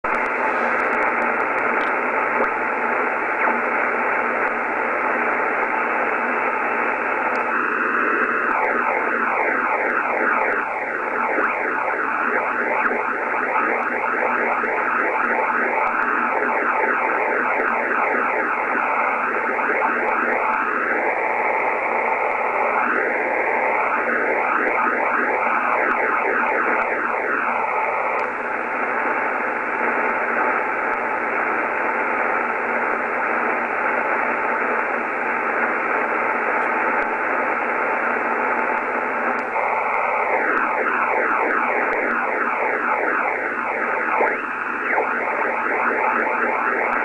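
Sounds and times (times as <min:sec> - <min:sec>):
radio receiver hiss: 0:00.0 - 0:47.0.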